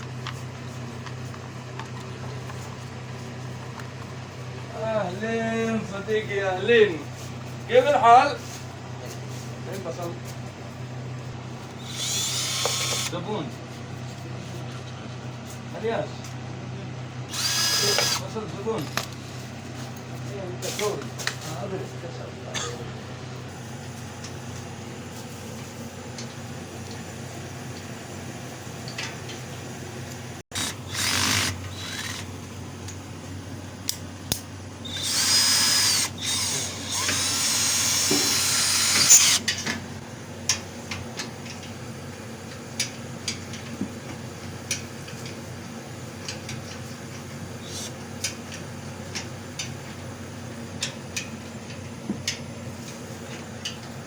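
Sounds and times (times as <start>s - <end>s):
steady low hum: 0.0s - 54.0s
power drill running: 11.8s - 13.2s, 17.3s - 18.4s, 30.5s - 32.6s, 34.8s - 39.6s.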